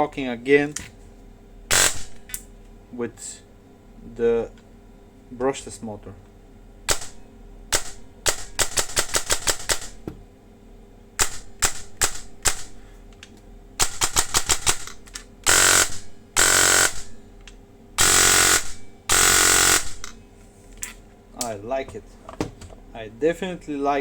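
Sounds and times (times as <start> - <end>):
airsoft gun firing: 1.7 - 2.2, 6.9 - 10.0, 18.0 - 20.1.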